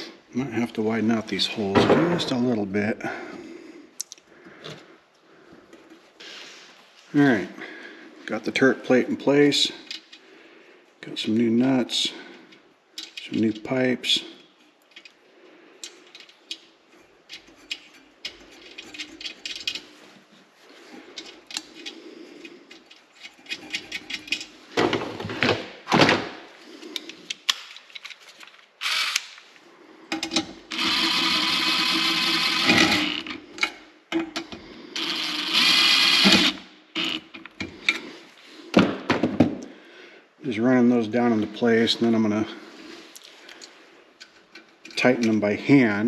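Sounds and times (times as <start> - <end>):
power drill running: 28.8 - 29.2, 30.7 - 33.3, 35.0 - 37.2.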